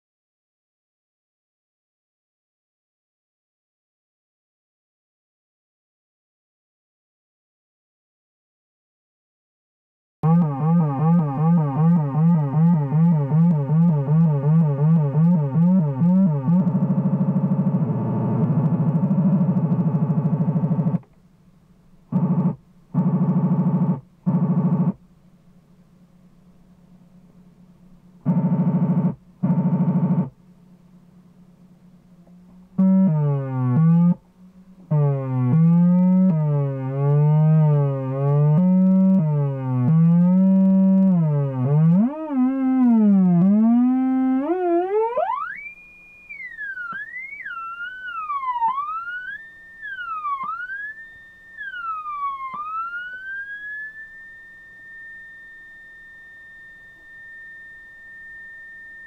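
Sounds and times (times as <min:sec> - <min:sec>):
swooping pure tone: 0:10.2 - 0:21.0, 0:32.8 - 0:59.0
warbling buzzy siren tone: 0:10.2 - 0:21.0, 0:22.1 - 0:25.0, 0:28.2 - 0:30.4, 0:32.8 - 0:59.0
short electronic buzzes: 0:22.1 - 0:25.0, 0:28.2 - 0:30.4, 0:32.8 - 0:59.0
steady high whistle tone: 0:42.6 - 0:59.0.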